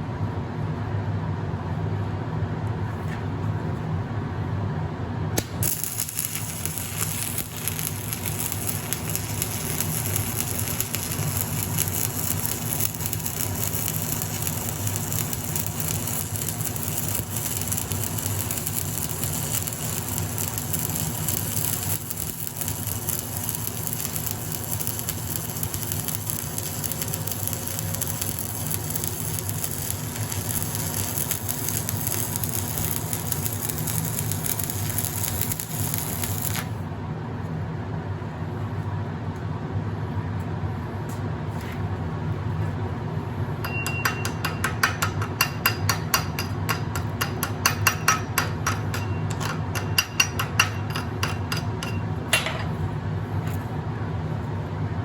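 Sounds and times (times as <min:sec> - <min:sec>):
steady low hum: 0:00.0 - 0:55.0
welding arc crackling and sizzling: 0:05.4 - 0:36.8.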